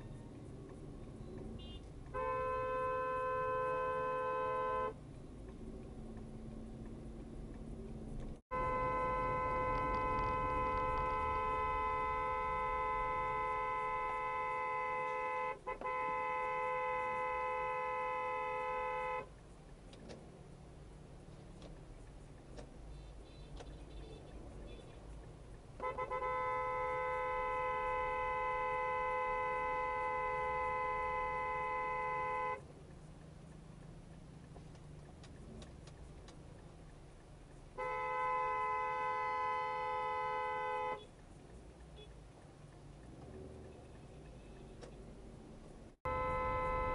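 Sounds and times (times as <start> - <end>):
low traffic noise: 0.0 - 46.9
car horn long blast: 1.6 - 5.0, 8.5 - 19.3, 25.8 - 32.6, 37.8 - 41.1, 46.0 - 46.9.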